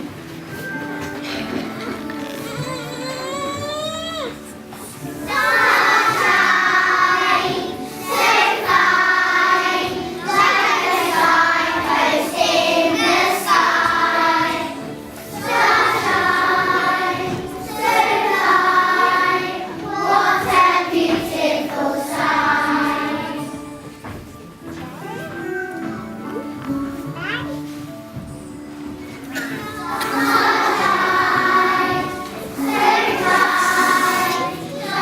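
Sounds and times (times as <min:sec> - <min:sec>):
group of voices singing: 0:05.3 - 0:23.6, 0:29.8 - 0:35.0.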